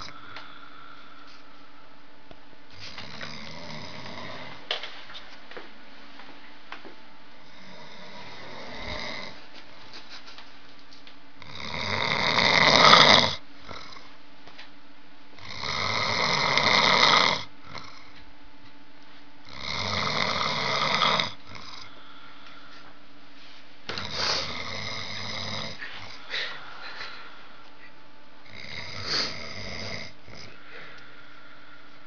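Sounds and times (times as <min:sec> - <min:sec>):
person snoring: 0:00.0 - 0:01.4, 0:02.7 - 0:04.7, 0:07.4 - 0:09.4, 0:11.4 - 0:14.1, 0:15.4 - 0:18.2, 0:19.4 - 0:22.8, 0:23.9 - 0:27.4, 0:28.4 - 0:32.0.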